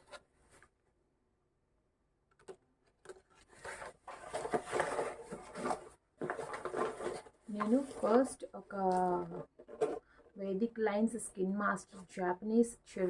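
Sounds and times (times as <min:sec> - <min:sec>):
packaging rustling and crinkling: 0:03.0 - 0:10.1.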